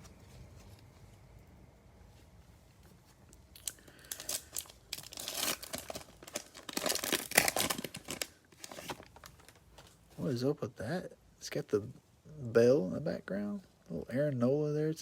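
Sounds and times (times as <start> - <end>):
foil wrapper tearing and crinkling: 3.6 - 9.6.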